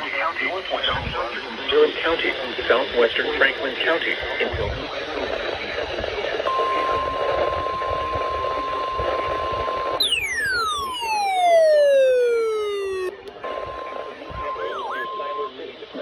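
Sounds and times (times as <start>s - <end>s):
falling tone: 10.0s - 13.1s
steady alarm tone: 10.0s - 13.1s.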